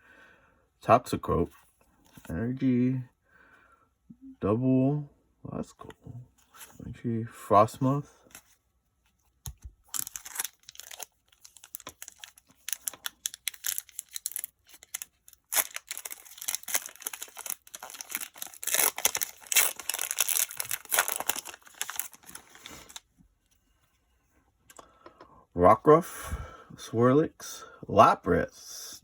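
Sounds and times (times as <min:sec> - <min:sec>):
foil wrapper tearing and crinkling: 0:09.8 - 0:23.0.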